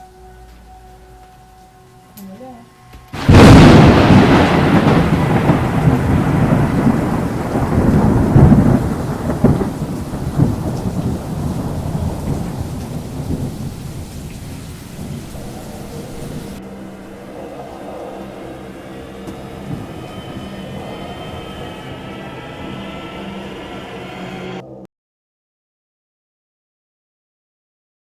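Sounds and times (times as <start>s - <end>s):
thunder rolling: 3.1s - 24.7s.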